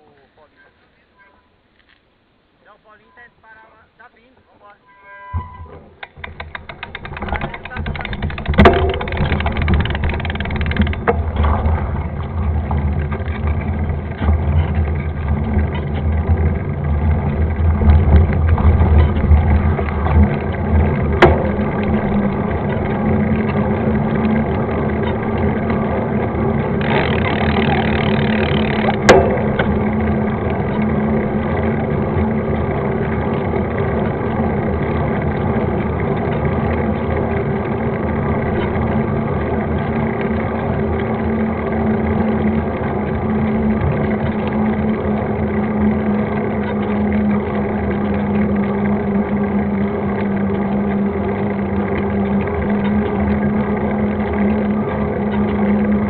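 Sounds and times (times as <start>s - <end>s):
sharp knocks: 5.4s - 12.0s, 26.8s - 30.1s
tyre and trail rumble: 5.4s - 56.0s.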